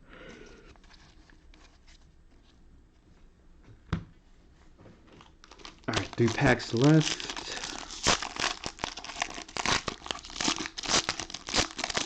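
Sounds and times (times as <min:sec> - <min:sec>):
trading cards rustling: 0:05.5 - 0:12.0.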